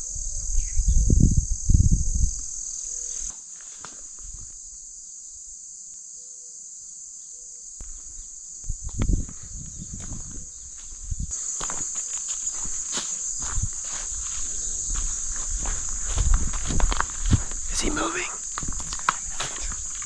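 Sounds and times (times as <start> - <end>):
crickets chirping: 0.0 - 20.0
footsteps through woods: 3.1 - 4.6, 7.8 - 20.0.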